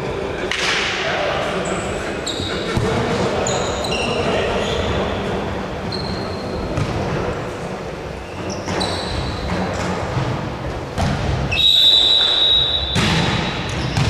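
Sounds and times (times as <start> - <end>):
shoe squeaks: 1.6 - 2.8, 3.4 - 5.3, 5.9 - 6.8, 8.1 - 10.1, 11.5 - 14.0
basketball bouncing on court: 11.0 - 14.0.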